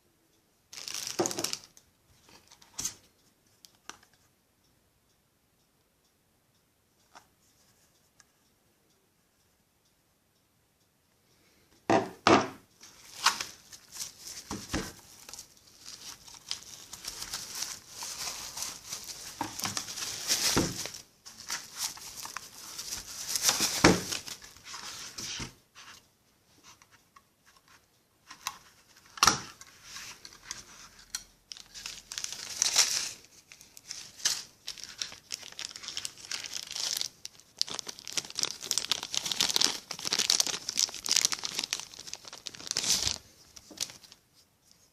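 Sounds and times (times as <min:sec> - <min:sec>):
wrapping crinkling and tearing: 0:00.8 - 0:01.8, 0:13.0 - 0:25.4, 0:29.4 - 0:44.2.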